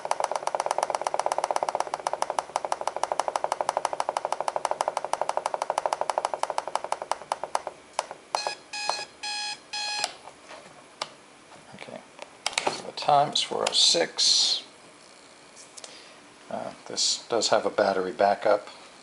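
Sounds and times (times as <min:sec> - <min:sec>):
fast electronic clicks: 0:00.0 - 0:07.7
short beeps: 0:08.4 - 0:10.1.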